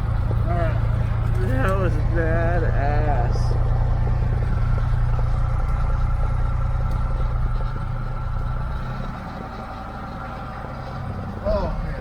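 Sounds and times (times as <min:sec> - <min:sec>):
propeller plane engine idling: 0:00.0 - 0:12.0.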